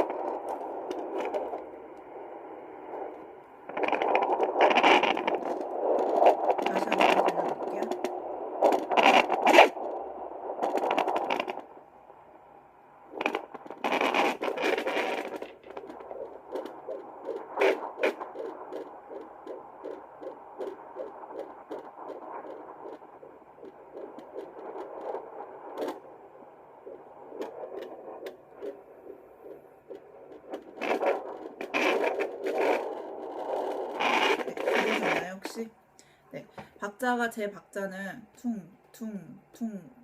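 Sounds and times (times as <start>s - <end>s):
whooshing fetal heartbeat: 0.0s - 35.3s
doppler probe scraping and crackling: 0.0s - 35.7s.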